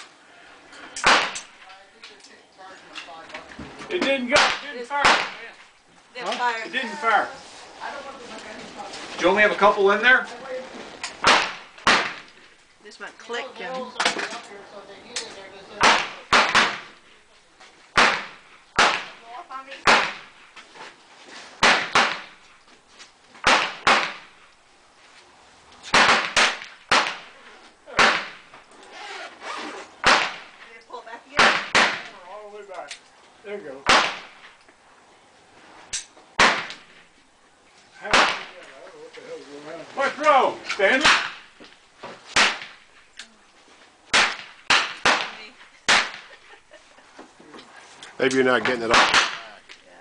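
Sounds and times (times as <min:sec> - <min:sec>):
handgun shots: 0:01.0 - 0:01.5, 0:11.2 - 0:12.3, 0:15.8 - 0:16.9, 0:18.0 - 0:19.2, 0:21.6 - 0:22.4, 0:23.4 - 0:24.3, 0:25.9 - 0:27.3, 0:30.0 - 0:30.5, 0:36.4 - 0:36.8, 0:41.0 - 0:41.4, 0:42.3 - 0:42.8, 0:44.1 - 0:46.3, 0:48.9 - 0:49.4.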